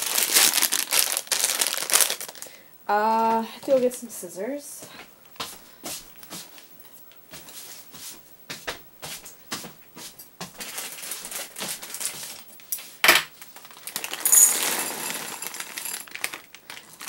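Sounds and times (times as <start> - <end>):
loud crinkling rustle: 0.0 - 2.5, 10.5 - 17.0
kitchen items clicking and knocking: 13.1 - 17.0.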